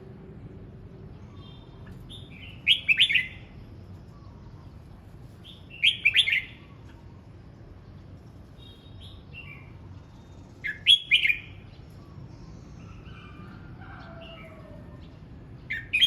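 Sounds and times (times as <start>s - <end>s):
bulbul singing: 1.2s - 4.6s, 5.4s - 7.2s, 8.6s - 14.6s.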